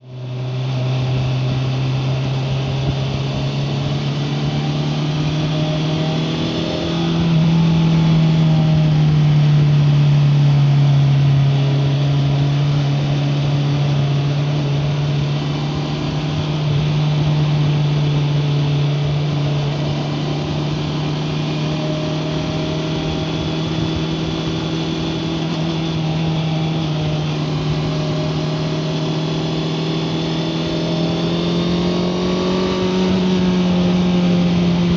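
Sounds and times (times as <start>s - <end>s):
motorcycle engine running: 0.0s - 34.9s
road noise: 0.0s - 34.9s
wind noise: 22.3s - 28.0s.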